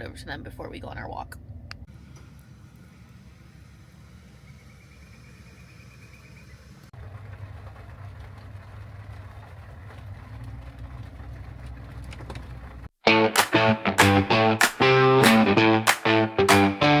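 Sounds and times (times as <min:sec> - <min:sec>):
car engine rumbling: 0:00.1 - 0:13.0
guitar music: 0:13.0 - 0:17.0.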